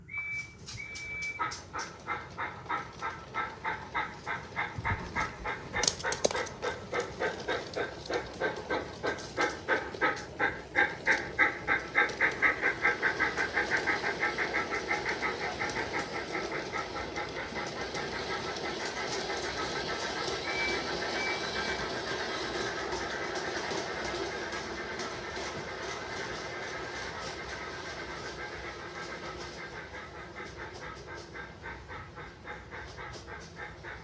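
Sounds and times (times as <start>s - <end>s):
model locomotive steam chuffs: 0.0s - 34.0s.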